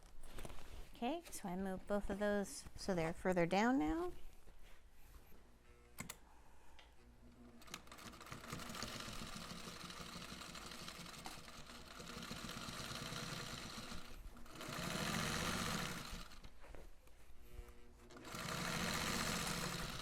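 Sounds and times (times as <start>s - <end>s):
sewing machine stitching: 7.6s - 16.5s, 18.1s - 20.0s.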